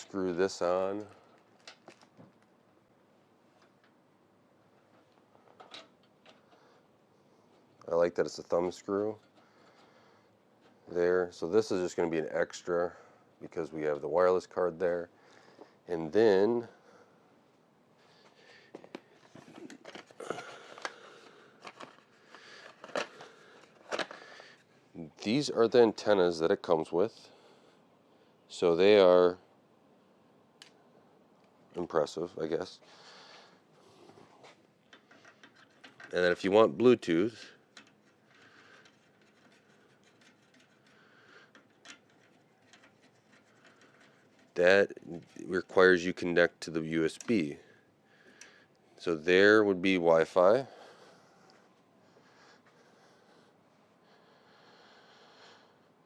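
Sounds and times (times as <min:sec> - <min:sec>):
handling of computer parts: 0:00.8 - 0:02.5, 0:04.8 - 0:06.7, 0:18.7 - 0:24.7, 0:34.0 - 0:36.6, 0:37.6 - 0:45.5
packaging rustling: 0:19.3 - 0:24.6
hardware clicks and taps: 0:34.8 - 0:36.2, 0:37.7 - 0:44.5.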